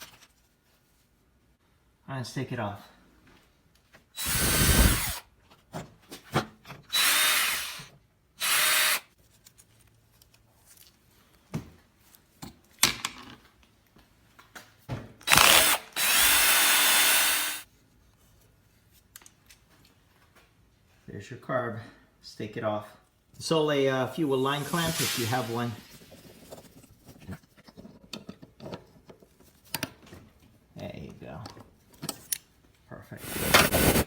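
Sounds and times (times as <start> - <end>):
power drill-driver bursts: 4.2 - 5.2, 6.9 - 9.1, 15.2 - 17.6, 24.3 - 26.0, 33.2 - 34.0.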